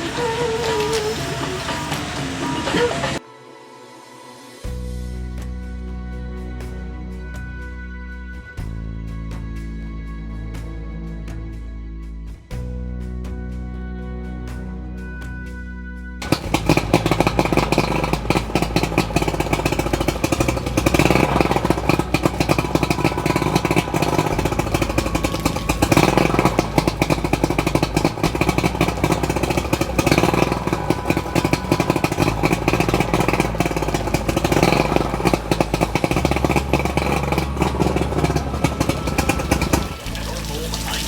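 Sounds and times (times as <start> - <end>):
outboard boat motor running: 0.0 - 3.2, 16.2 - 41.0.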